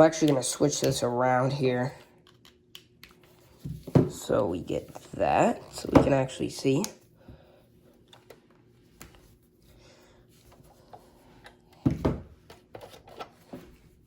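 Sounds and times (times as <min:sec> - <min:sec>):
gadgets clicking and rubbing on desk: 0:02.0 - 0:06.9.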